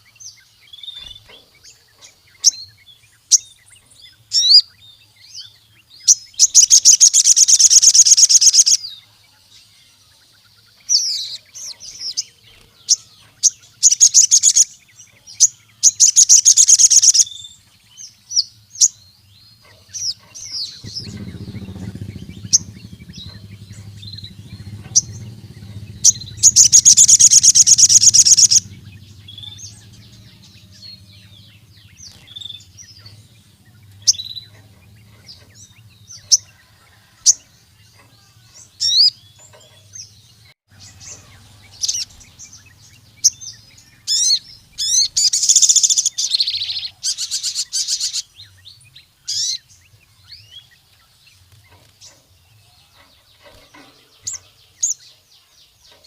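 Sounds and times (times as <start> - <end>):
sunbird singing rapid trills: 0.0 - 56.0
faint low hum: 19.6 - 38.6.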